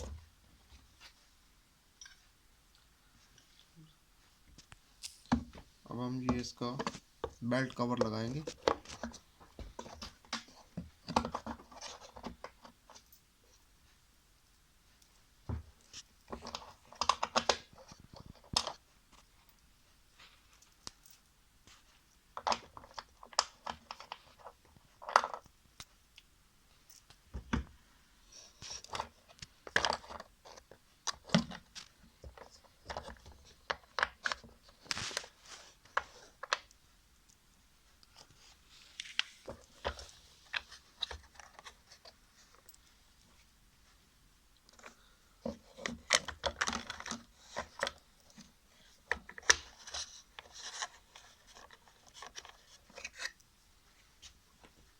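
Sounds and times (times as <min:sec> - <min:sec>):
plastic parts clicks and scrapes: 0:15.8 - 0:18.8, 0:28.5 - 0:36.8, 0:44.6 - 0:53.4.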